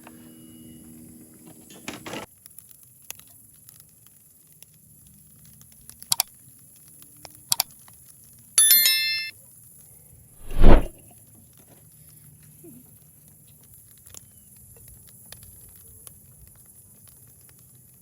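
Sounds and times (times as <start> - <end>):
ringing metal strike: 8.6 - 9.3.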